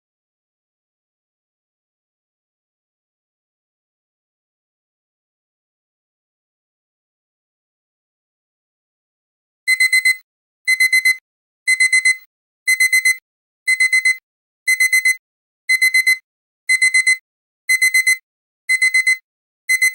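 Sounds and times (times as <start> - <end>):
digital timer alarm beeping: 9.7 - 19.9.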